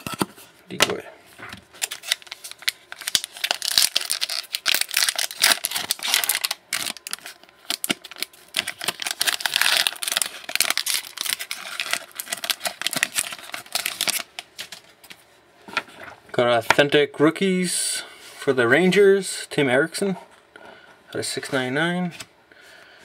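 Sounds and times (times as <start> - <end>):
wrapper crinkling and tearing: 1.7 - 14.8.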